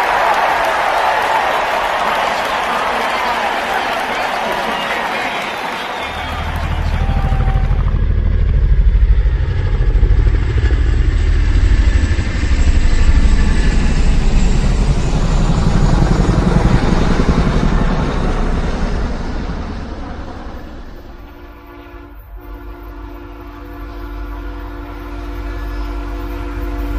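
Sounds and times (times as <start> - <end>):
vehicle engine rumbling: 6.1 - 13.6.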